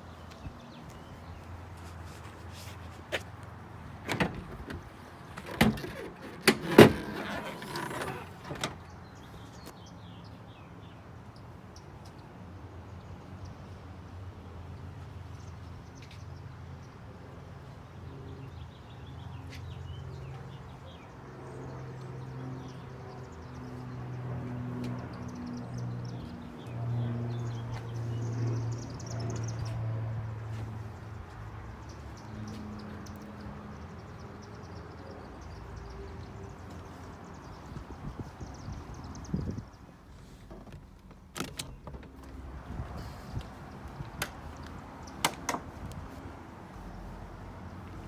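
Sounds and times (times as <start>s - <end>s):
car door clunks and knocks: 4.0s - 8.8s.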